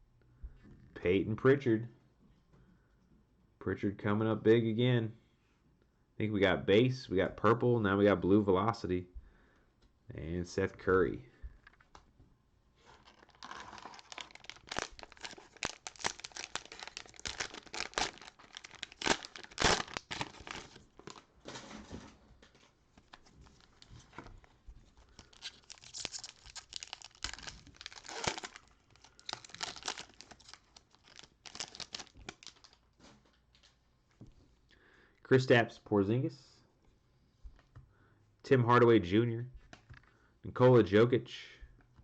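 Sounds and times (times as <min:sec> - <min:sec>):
cellophane wrapper crinkling: 0:12.8 - 0:21.4, 0:22.4 - 0:33.8.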